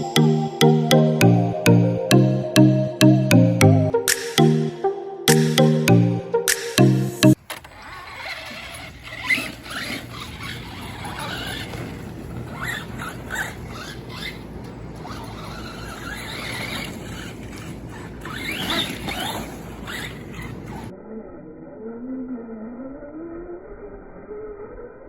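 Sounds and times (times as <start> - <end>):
electric motor whining: 7.4 - 20.9.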